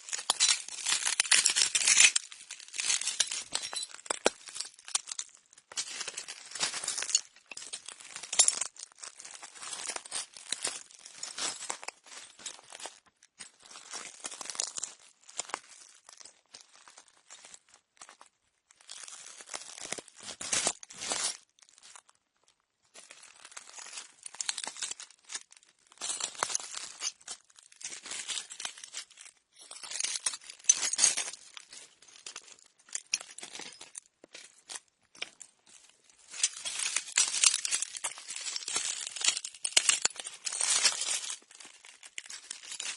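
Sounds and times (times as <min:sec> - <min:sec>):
footsteps crunching on broken glass: 0:00.0 - 0:13.1, 0:23.1 - 0:42.9.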